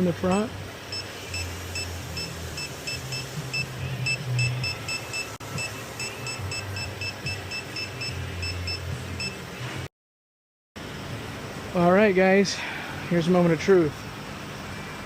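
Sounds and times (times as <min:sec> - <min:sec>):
background music with bass: 0:00.0 - 0:09.9
leak detector beeping: 0:00.9 - 0:09.4.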